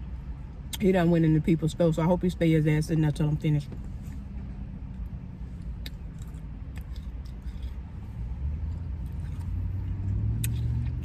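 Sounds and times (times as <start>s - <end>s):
car engine rumbling: 0.0s - 11.0s.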